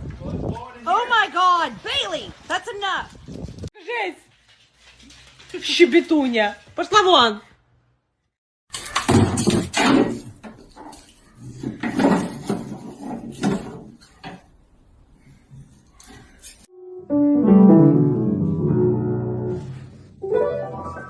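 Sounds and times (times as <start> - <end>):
piano music: 16.7 - 21.0.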